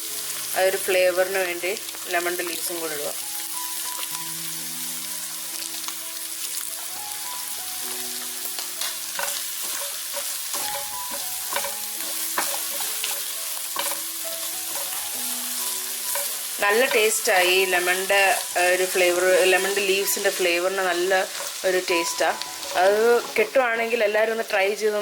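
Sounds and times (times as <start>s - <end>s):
vegetables sizzling in a pan: 0.0s - 25.0s
spoon tapping against pan: 8.8s - 14.0s, 16.1s - 17.2s.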